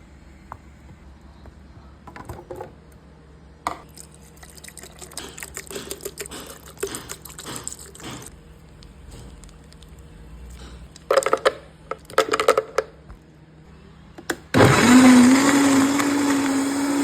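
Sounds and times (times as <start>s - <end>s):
liquid pouring into container: 3.9s - 8.3s.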